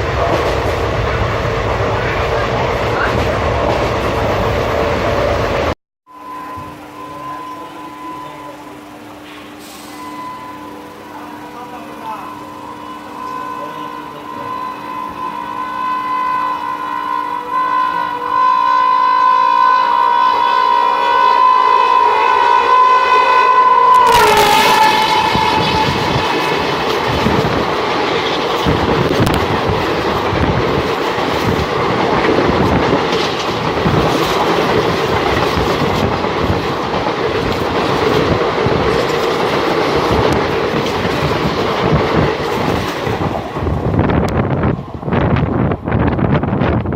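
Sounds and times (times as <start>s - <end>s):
train passing with rumble: 0.0s - 46.9s
locomotive horn chord: 6.1s - 26.9s
wheels clattering over rail joints: 24.0s - 44.4s.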